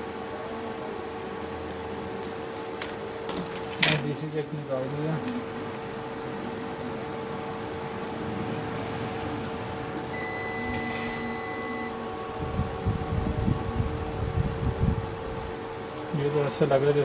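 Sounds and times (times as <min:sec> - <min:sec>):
workshop equipment humming: 0:00.0 - 0:17.0
multimeter continuity beep: 0:10.1 - 0:12.0.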